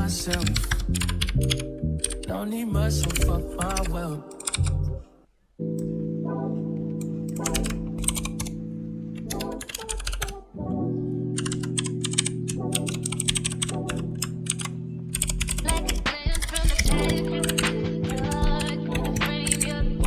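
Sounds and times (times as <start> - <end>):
keyboard typing: 0.0 - 5.0, 5.6 - 10.5, 11.2 - 19.9
background music low chords: 0.0 - 20.0.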